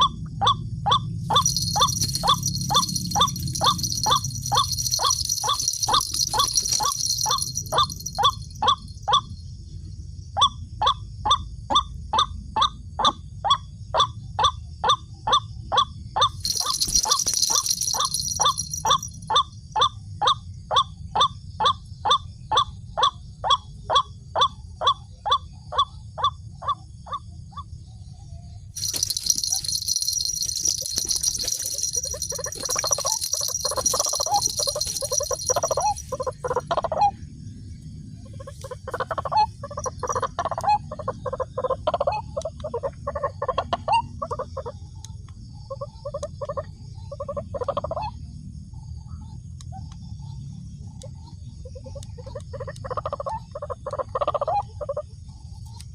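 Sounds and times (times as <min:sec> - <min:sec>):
bird call rattle: 0:01.3 - 0:09.3, 0:16.2 - 0:19.5, 0:28.8 - 0:37.1, 0:38.2 - 0:42.2.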